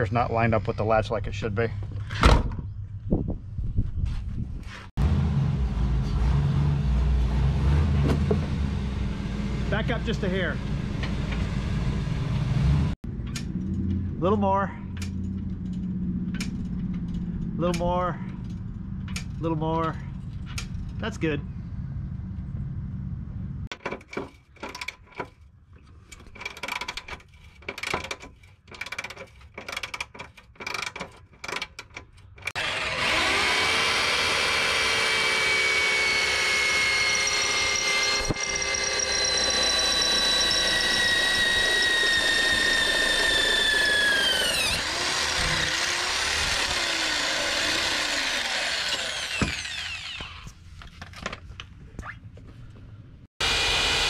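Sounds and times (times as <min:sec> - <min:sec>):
power drill whining under load: 0:32.5 - 0:50.5, 0:53.4 - 0:54.0.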